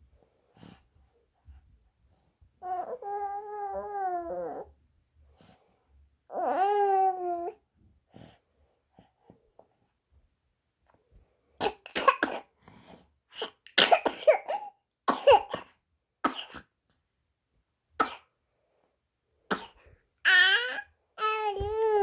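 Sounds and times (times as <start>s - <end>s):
baby whining cries: 2.6s - 4.7s, 6.3s - 7.6s, 20.3s - 22.0s
baby grunting and coughing: 11.6s - 12.6s, 13.4s - 16.7s, 18.0s - 18.3s, 19.5s - 20.5s.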